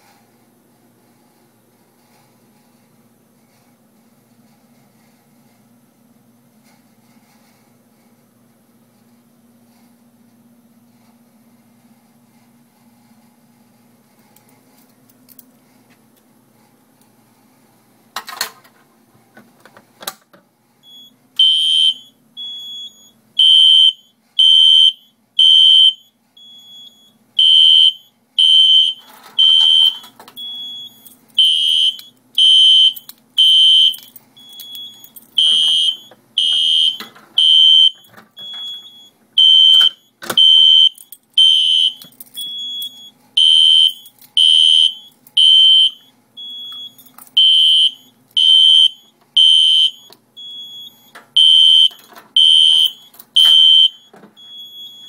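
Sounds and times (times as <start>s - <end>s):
fire alarm horn blasts: 20.9s - 55.0s.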